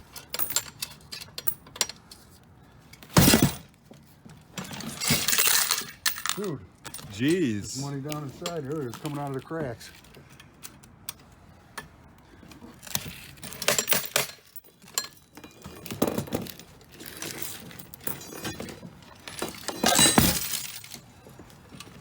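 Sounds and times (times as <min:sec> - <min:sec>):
coins clinking and jangling: 0:05.0 - 0:07.5, 0:19.3 - 0:21.0.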